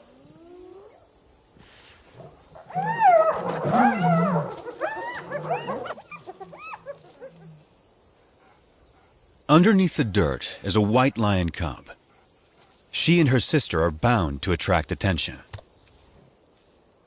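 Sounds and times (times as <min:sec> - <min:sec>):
hyenas yelping: 0:02.2 - 0:07.7.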